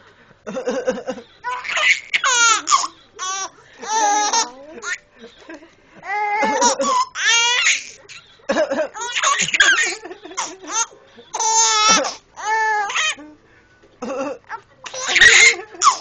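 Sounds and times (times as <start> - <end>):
baby laughing: 1.4 - 5.0, 6.0 - 13.3, 14.4 - 16.0
person coughing: 11.8 - 12.2, 14.0 - 14.4.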